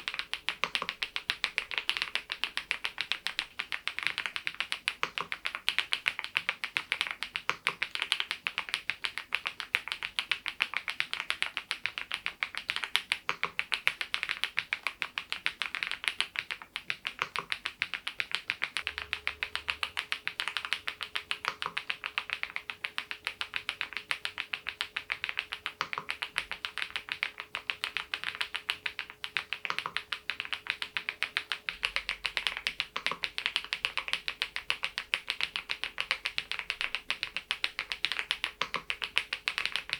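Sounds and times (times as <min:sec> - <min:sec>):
mechanical keyboard typing: 0:00.0 - 0:39.9
faint steady hum: 0:18.8 - 0:39.9.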